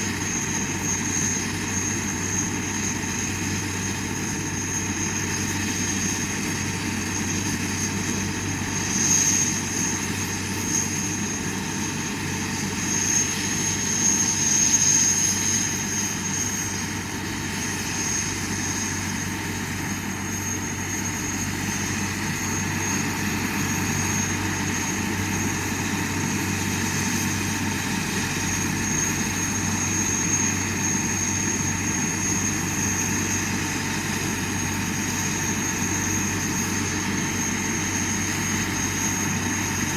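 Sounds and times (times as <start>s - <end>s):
helicopter engine whining: 0.0s - 39.9s.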